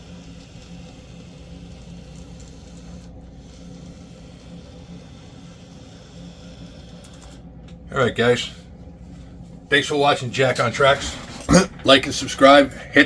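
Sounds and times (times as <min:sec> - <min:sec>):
model train motor whirring: 0:00.0 - 0:07.4.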